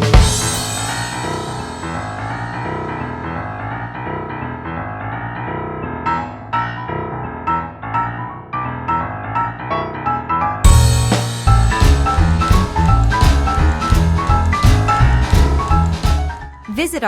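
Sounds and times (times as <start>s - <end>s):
piano background music: 0.0s - 17.0s
plucked notes: 10.7s - 16.4s.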